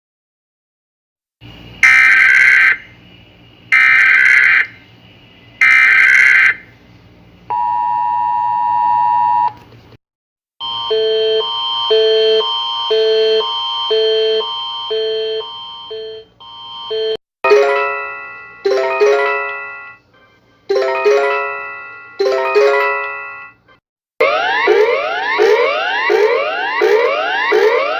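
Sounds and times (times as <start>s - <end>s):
two-tone attention signal: 10.6s - 20.0s, 20.7s - 23.6s
repeating electronic tune: 24.2s - 27.9s.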